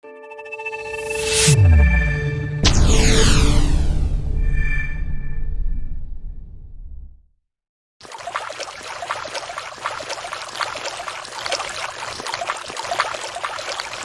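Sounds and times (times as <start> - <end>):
water babbling like a stream: 8.0 - 14.0.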